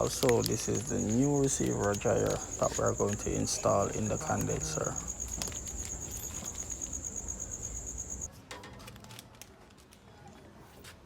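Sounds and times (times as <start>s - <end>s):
faint scattered clicks: 0.0s - 8.3s.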